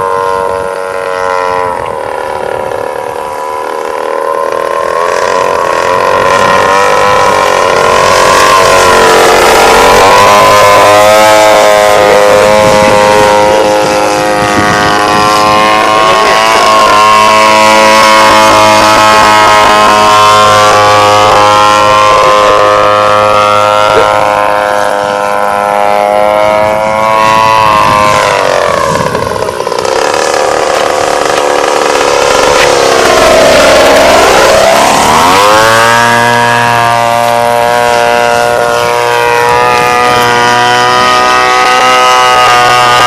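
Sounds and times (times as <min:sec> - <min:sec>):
model plane motor and propeller: 0:00.0 - 0:43.0.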